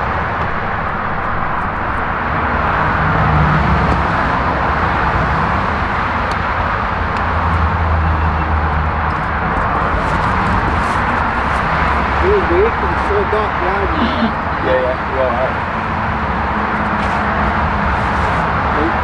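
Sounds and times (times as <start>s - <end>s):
road traffic noise: 0.0s - 19.0s.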